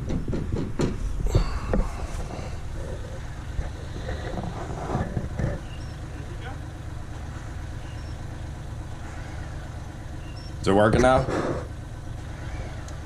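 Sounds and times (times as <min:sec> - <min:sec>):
sharp knocks: 0:00.0 - 0:02.4
machine engine running: 0:00.0 - 0:13.0.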